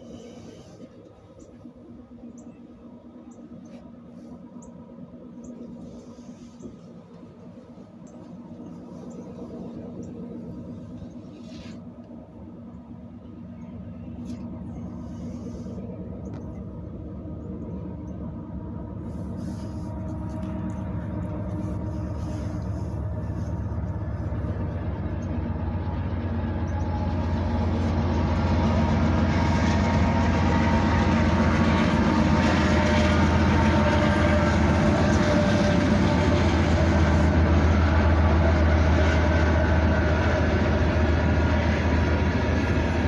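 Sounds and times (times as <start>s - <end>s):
train running with deep drone: 0.0s - 43.0s.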